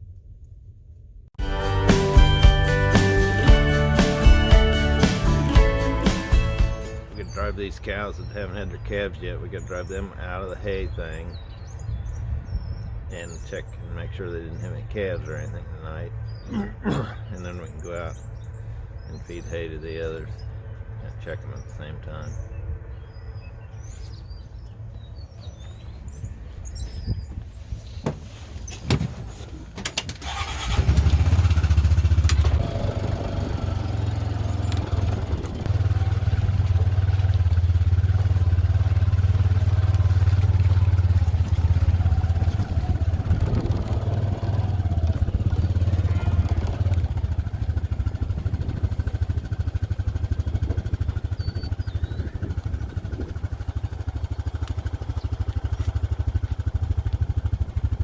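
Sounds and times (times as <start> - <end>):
vehicle engine running: 1.4 - 9.9, 30.2 - 58.0.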